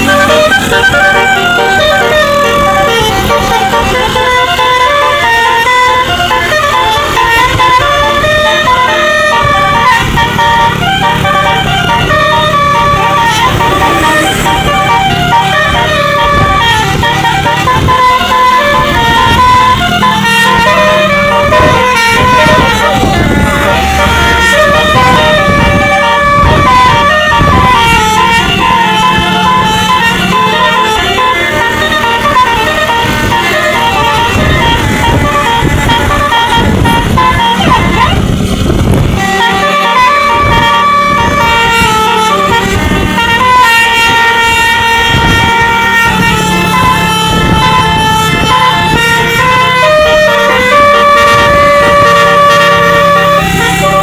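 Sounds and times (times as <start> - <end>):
bus musical horn melody: 0.0 - 54.0.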